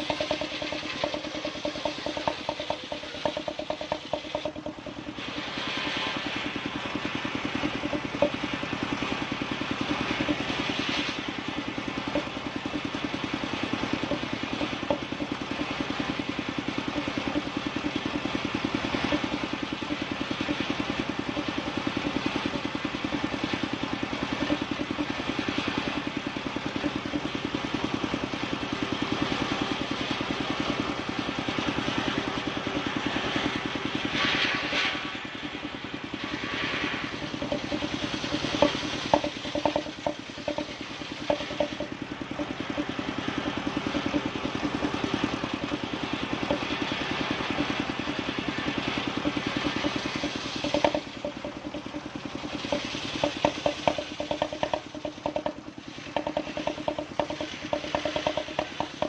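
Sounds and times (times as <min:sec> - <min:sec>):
small engine firing beat: 0:00.0 - 0:59.0
hiss: 0:05.1 - 0:08.8, 0:33.0 - 0:41.8.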